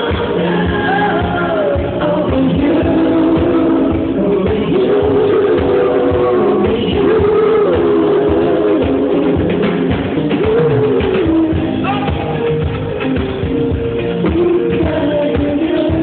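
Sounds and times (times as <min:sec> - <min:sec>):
gliding vocals: 0:00.0 - 0:12.6
drum kit beat: 0:00.0 - 0:16.0
live band playing slow pop song: 0:00.0 - 0:16.0.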